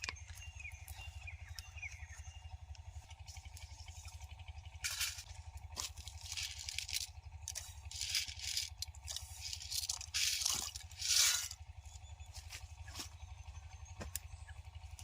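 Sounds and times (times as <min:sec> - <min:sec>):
steady low hum: 0:00.0 - 0:15.0
rustling and scraping: 0:03.0 - 0:11.7.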